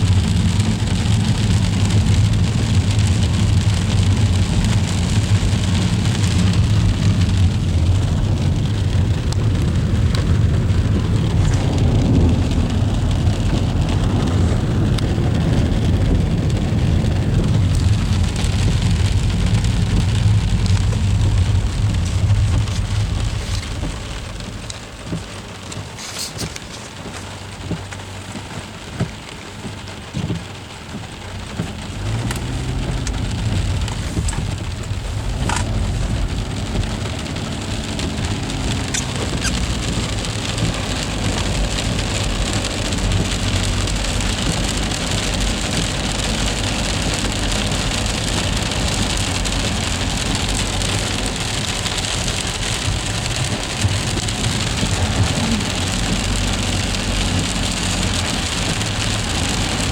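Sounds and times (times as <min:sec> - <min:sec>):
freezing rain pattering: 0:00.0 - 0:59.9
steady low rumble: 0:00.0 - 0:59.9
sharp ice ticks: 0:38.7 - 0:40.1.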